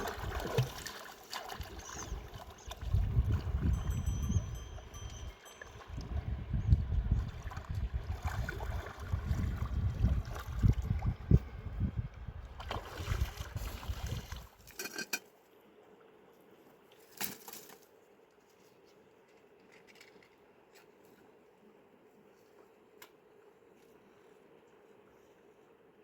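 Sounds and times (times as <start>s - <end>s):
water sloshing and splashing: 0.0s - 3.8s, 5.6s - 11.5s, 12.4s - 15.2s.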